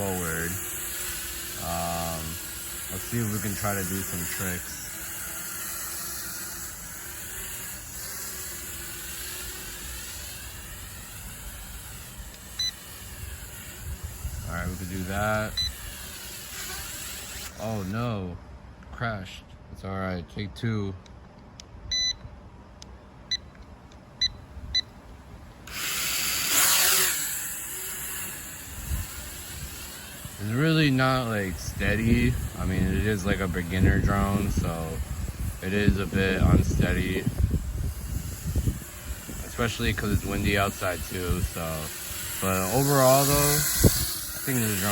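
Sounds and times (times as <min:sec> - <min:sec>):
drone propellers whining: 0:00.0 - 0:18.1, 0:25.6 - 0:44.9
short electronic beeps: 0:12.6 - 0:12.8, 0:21.9 - 0:22.2
wind rumbling on microphone: 0:13.0 - 0:16.1, 0:28.6 - 0:44.9.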